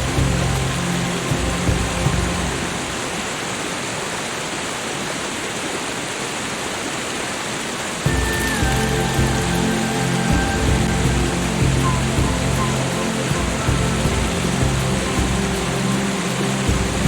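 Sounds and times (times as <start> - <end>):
soft background music: 0.0 - 3.8, 8.0 - 17.0
falling water: 0.0 - 17.0.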